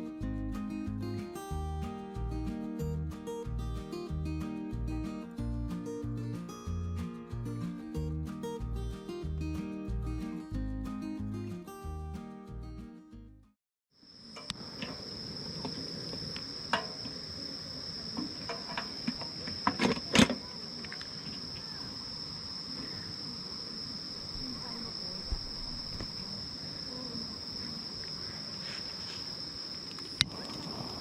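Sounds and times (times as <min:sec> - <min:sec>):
insects trilling: 0:14.0 - 0:31.0.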